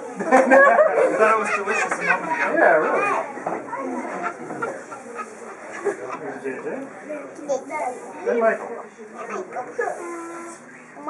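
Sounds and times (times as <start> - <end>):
background chatter of voices: 0.0 - 11.0.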